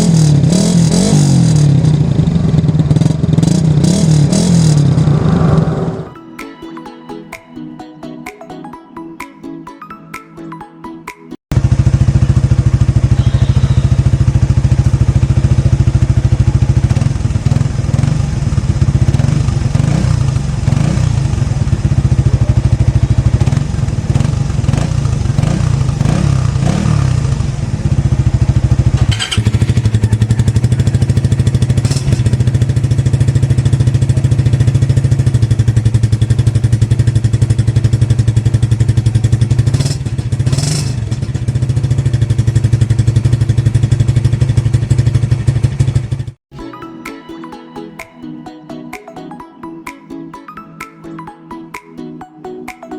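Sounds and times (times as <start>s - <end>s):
motorcycle engine revving and idling: 0.0s - 6.1s, 11.5s - 46.4s.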